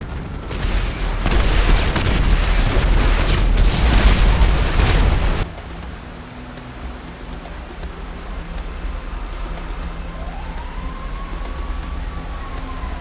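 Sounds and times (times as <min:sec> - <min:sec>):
rumbling explosion blast: 0:00.0 - 0:06.0
steady tones: 0:00.0 - 0:13.0.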